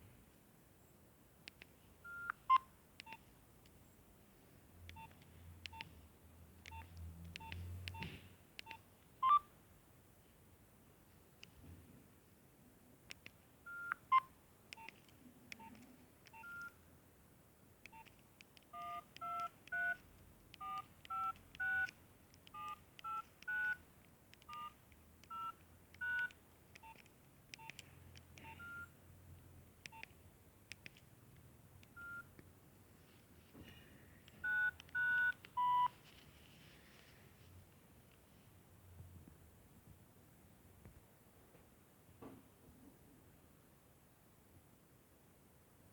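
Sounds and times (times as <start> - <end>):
phone keypad two-tone beeps: 18.8 - 20.0, 28.4 - 28.9, 32.0 - 32.3, 34.4 - 35.9.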